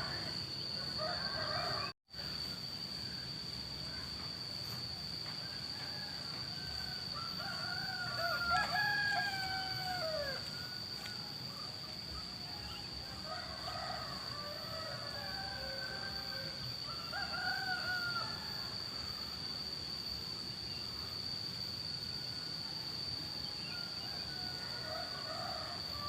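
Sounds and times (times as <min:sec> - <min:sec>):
rooster crowing: 0:00.0 - 0:02.0, 0:05.2 - 0:11.7, 0:12.4 - 0:19.2, 0:22.6 - 0:26.0.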